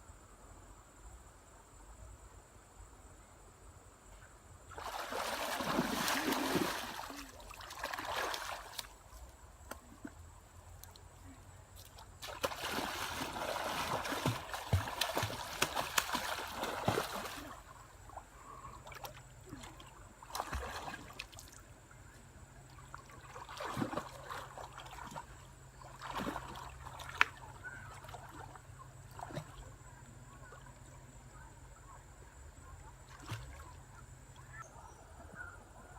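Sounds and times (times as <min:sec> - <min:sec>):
water splashing: 0:04.7 - 0:09.0, 0:12.2 - 0:17.8, 0:18.8 - 0:21.6, 0:22.8 - 0:28.5.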